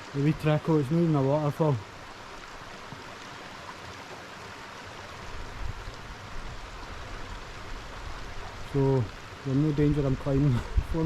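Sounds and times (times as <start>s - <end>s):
running water rushing: 0.0s - 11.0s.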